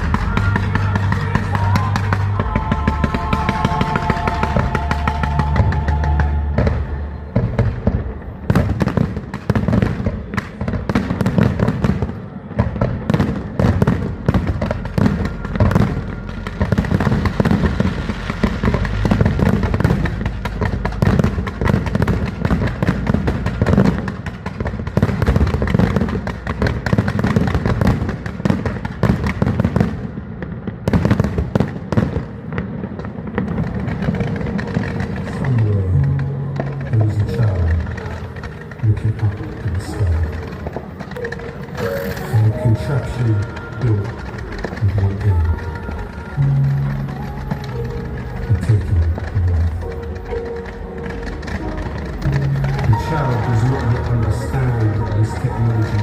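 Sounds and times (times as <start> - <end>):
music soundtrack: 0.0 - 9.8, 13.0 - 28.1, 34.5 - 56.0
fireworks bangs and crackles: 0.0 - 56.0.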